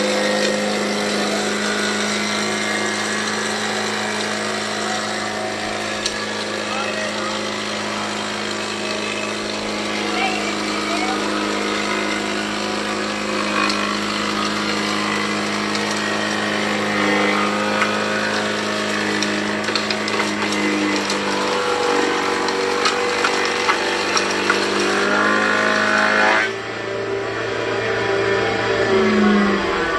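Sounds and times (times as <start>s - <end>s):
machine hum: 0.0s - 29.9s
knocks and clicks of wood and tools: 17.5s - 25.1s.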